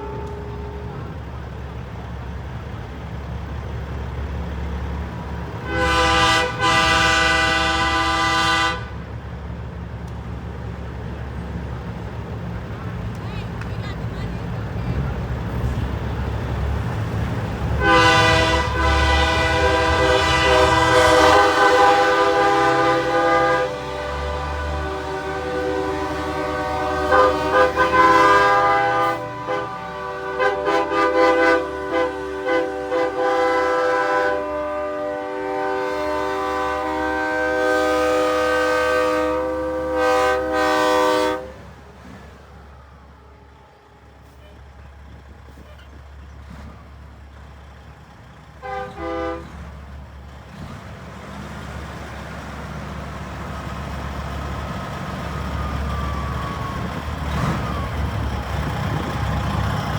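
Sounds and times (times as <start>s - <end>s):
truck engines rumbling: 0.0s - 59.9s
truck air horns blowing chords: 5.6s - 9.0s, 17.8s - 41.8s, 48.6s - 49.7s.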